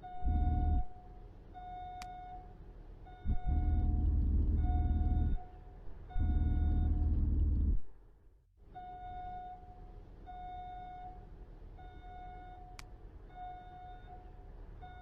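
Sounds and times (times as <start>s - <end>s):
low steady hum: 0.0s - 2.4s, 3.1s - 8.0s
reversing alarm beeping: 0.0s - 2.5s, 3.1s - 7.8s, 8.8s - 12.8s, 13.4s - 15.0s.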